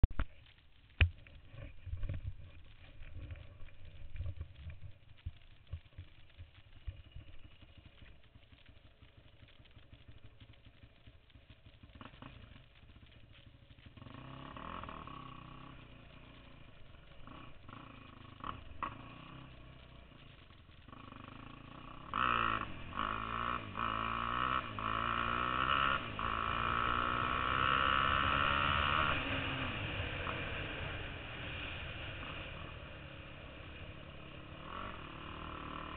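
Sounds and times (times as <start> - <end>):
quad engine revving: 13.9 - 20.2, 20.8 - 35.9.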